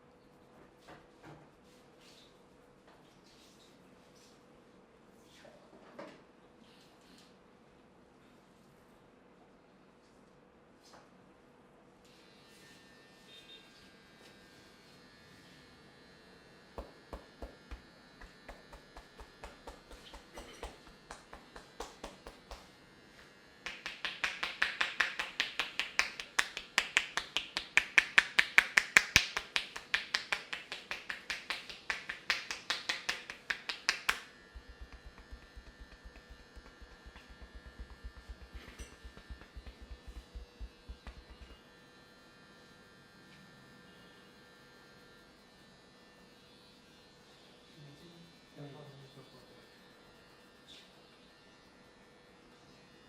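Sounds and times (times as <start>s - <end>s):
rapid sharp clicking: 16.8s - 22.7s, 23.7s - 41.6s
faint hum: 16.8s - 22.8s, 23.6s - 41.7s.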